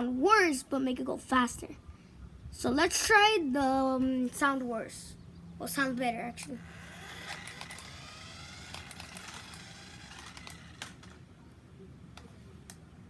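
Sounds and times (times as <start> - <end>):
toy car electric motor whining: 6.3 - 11.2
sharp clicks: 6.4 - 11.2.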